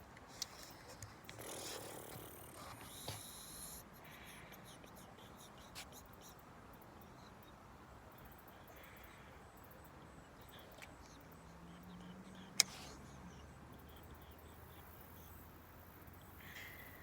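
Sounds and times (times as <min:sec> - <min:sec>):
faint low hum: 0:00.0 - 0:17.0
small high chirps: 0:00.4 - 0:07.6.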